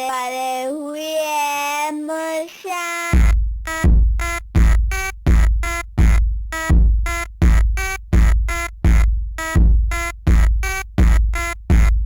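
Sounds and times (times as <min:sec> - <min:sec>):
electronic music loop: 0:03.0 - 0:12.0.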